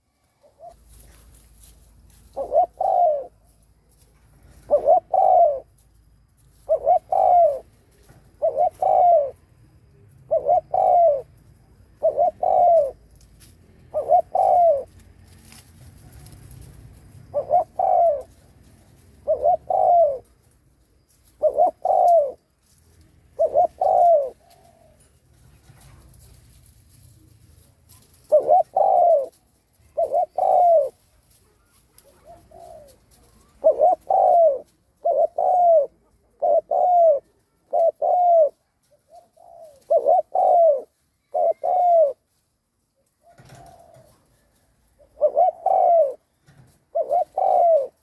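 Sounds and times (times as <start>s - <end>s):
dove cooing: 0.0s - 1.3s, 2.2s - 3.8s, 4.4s - 5.8s, 6.6s - 26.4s, 27.2s - 42.3s, 43.0s - 48.0s.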